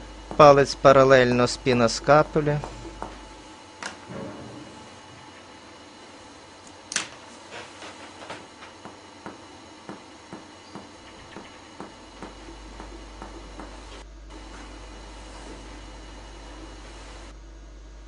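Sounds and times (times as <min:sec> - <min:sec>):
finger tapping on chest: 0:11.8 - 0:13.8.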